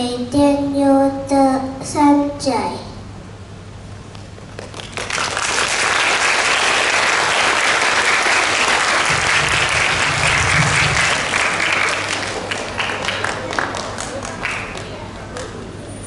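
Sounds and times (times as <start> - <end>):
audience clapping: 4.4 - 15.7.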